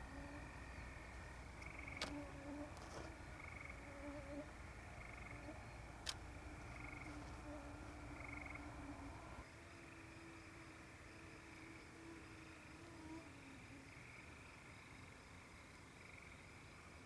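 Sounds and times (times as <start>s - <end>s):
frogs trilling: 0.0s - 9.4s
lower wavering frog calls: 0.0s - 10.1s.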